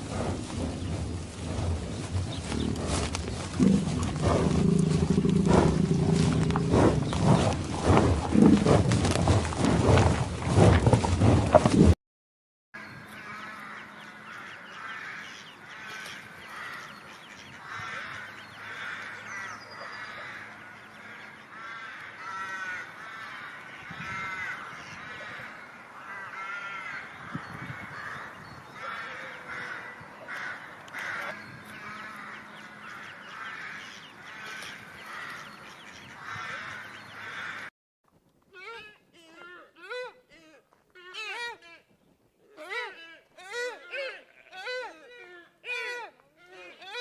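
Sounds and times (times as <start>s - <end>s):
group of birds calling: 13.0s - 37.7s.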